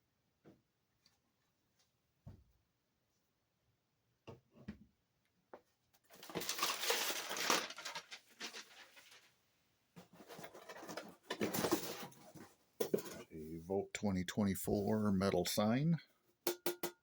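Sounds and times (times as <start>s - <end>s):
packaging rustling: 6.1s - 9.3s.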